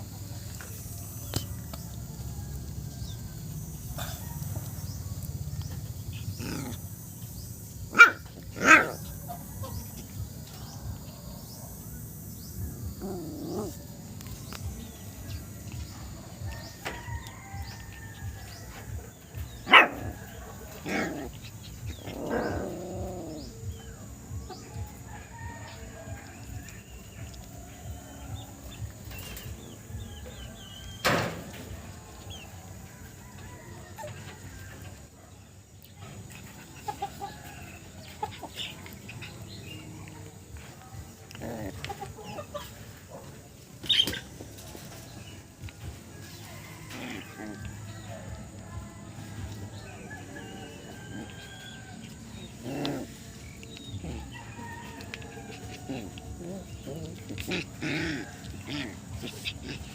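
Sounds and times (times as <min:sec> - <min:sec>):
small dog yapping: 0:07.9 - 0:09.0, 0:19.7 - 0:20.1.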